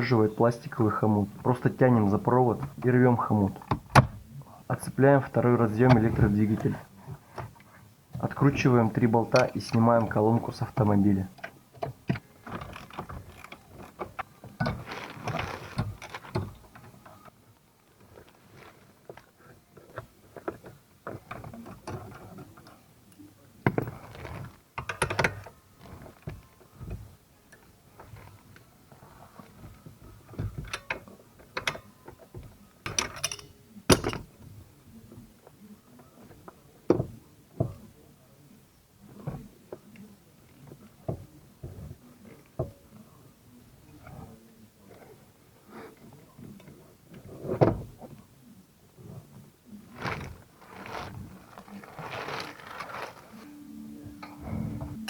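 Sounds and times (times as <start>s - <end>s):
metallic clicks and clunks of tools: 9.2s - 17.3s, 30.3s - 34.4s
metal tools knocking: 32.9s - 34.4s.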